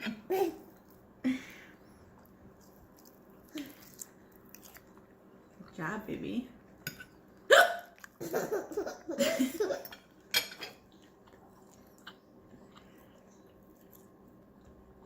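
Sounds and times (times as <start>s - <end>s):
woman hiccuping: 7.5s - 8.0s.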